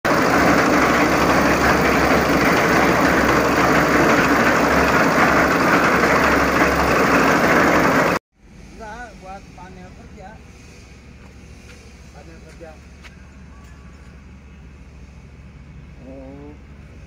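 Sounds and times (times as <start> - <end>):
concrete mixer diesel engine running: 0.0 - 17.0.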